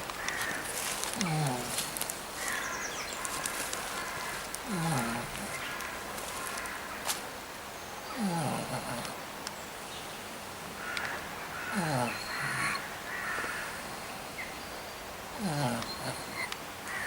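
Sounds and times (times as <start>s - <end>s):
faint birds calling: 0.0s - 17.0s
pig snoring: 4.6s - 5.6s, 8.1s - 9.2s, 11.7s - 12.9s, 15.4s - 16.5s.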